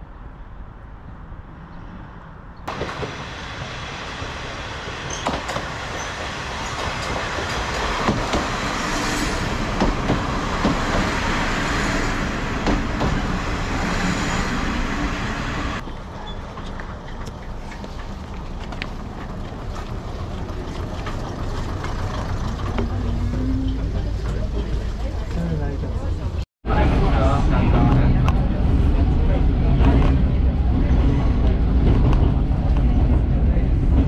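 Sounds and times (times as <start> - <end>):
diesel railcar engine: 0.0 - 34.0
wheels on rails: 15.7 - 26.4.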